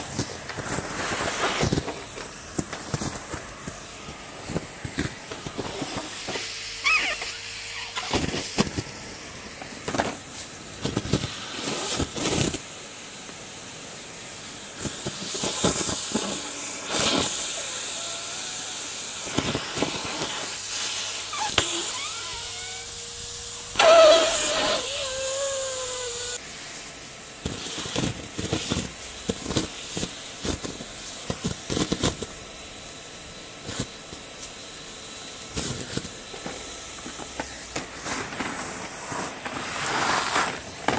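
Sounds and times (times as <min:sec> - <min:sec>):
leaves and grit rattling in hose: 0:00.0 - 0:40.9
vacuum cleaner running: 0:00.0 - 0:40.9.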